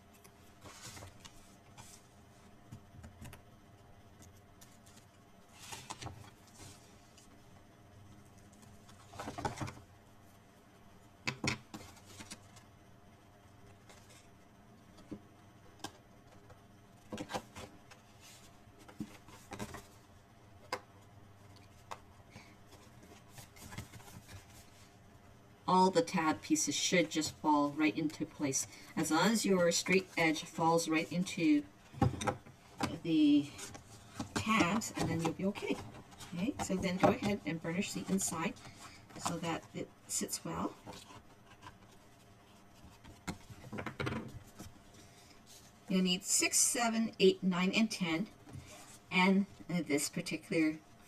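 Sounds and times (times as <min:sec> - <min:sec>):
paper rustling and scraping: 0:00.6 - 0:02.1.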